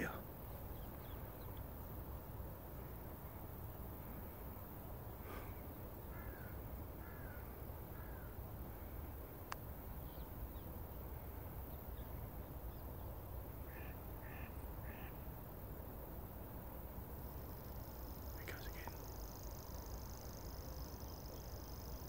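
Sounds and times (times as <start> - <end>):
harsh bird calls: 0.0 - 1.7, 5.2 - 9.2, 9.9 - 15.2, 18.3 - 19.2.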